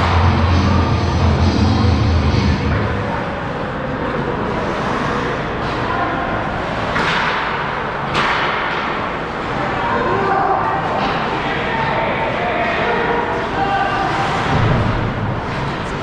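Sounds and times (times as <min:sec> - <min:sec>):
rink crowd hubbub: 0:00.0 - 0:16.0
hockey stick hitting puck: 0:06.9 - 0:09.0.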